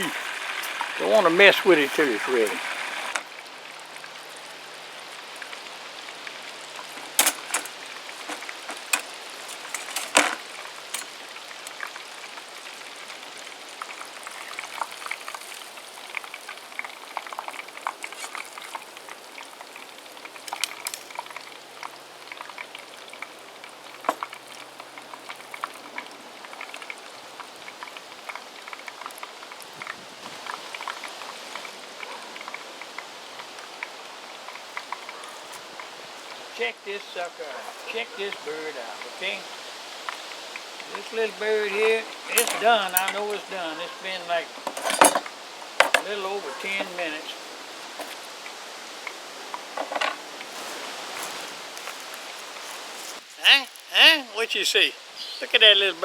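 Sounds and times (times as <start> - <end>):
deep frying bubbling sizzle: 0.0 - 44.7, 45.3 - 53.3
oil popping: 0.0 - 53.3.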